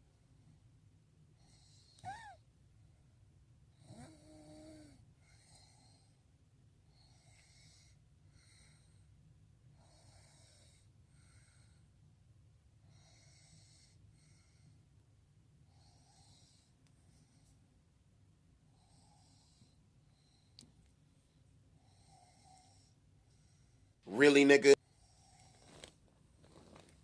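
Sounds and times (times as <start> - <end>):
person snoring: 3.8 - 5.0.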